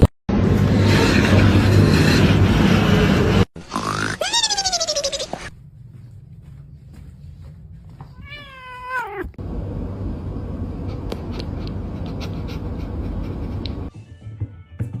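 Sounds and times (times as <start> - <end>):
cat meowing: 8.1 - 9.4
low rumbling noise: 9.4 - 13.9.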